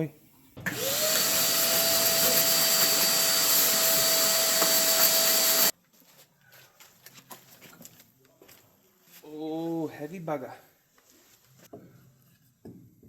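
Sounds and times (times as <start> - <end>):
machine motor whirring: 0.7 - 5.7.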